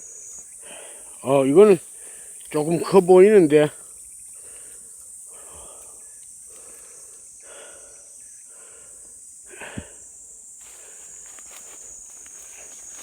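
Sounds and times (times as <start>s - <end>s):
high-pitched insect buzz: 0.0s - 13.0s
person breathing heavily: 0.6s - 1.2s, 1.8s - 2.4s, 3.8s - 11.9s.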